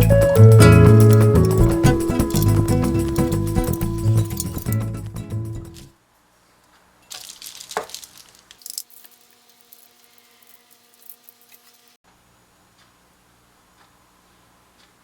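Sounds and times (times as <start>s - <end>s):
handling clicks and rustles: 0.1s - 5.9s, 6.7s - 9.3s.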